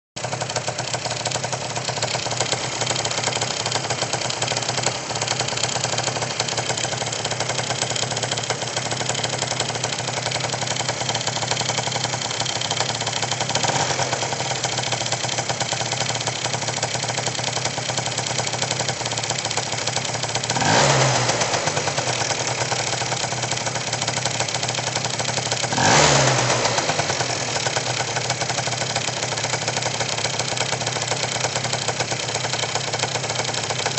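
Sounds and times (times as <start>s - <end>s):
car engine idling with knock: 0.2s - 33.9s
car engine revving: 25.7s - 27.5s.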